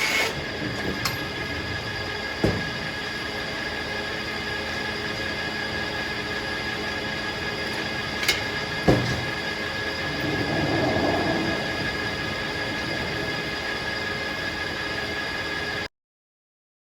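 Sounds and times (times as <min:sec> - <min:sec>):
circular sawmill running: 0:00.0 - 0:15.9
heavy thump: 0:02.4 - 0:02.9, 0:08.8 - 0:10.0.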